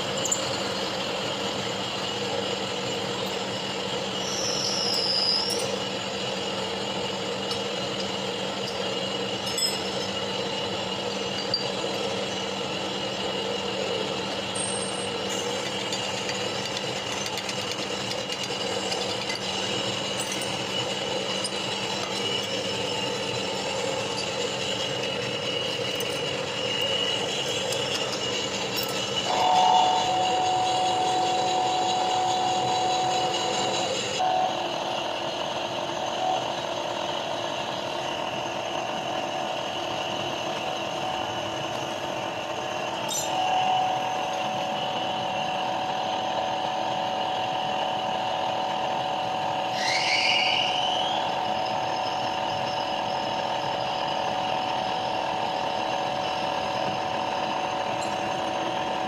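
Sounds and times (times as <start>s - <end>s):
machine tool running: 0.0s - 59.0s
steady whine: 0.0s - 59.0s
high cutting tone: 26.7s - 34.7s.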